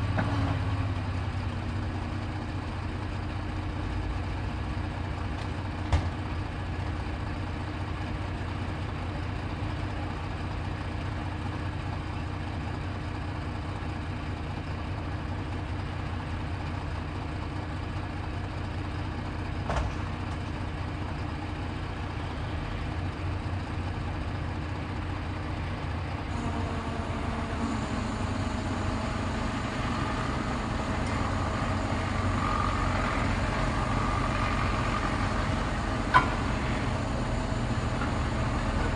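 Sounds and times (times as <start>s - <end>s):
heavy vehicle engine idling: 0.0s - 38.9s
higher engine note: 25.5s - 38.9s.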